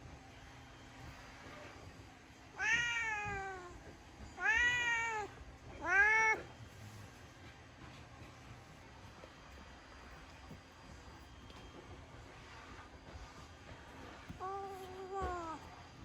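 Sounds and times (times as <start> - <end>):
cat meowing: 2.5 - 6.5, 14.4 - 15.7.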